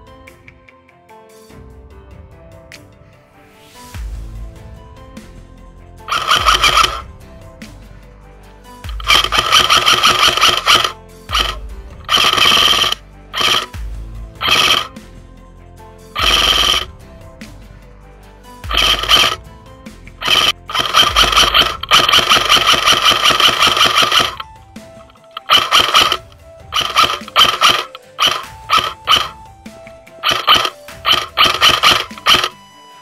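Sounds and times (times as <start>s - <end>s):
airsoft rifle full-auto bursts: 6.1s - 7.0s, 8.9s - 13.8s, 14.4s - 14.9s, 16.2s - 16.9s, 18.7s - 19.4s, 20.2s - 29.4s, 30.2s - 32.6s.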